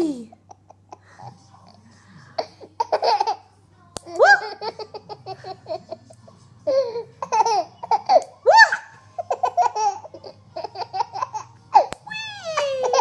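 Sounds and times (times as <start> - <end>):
baby giggling and laughing: 2.4 - 3.5, 4.1 - 5.9, 6.7 - 13.0
baby squealing: 12.1 - 13.0.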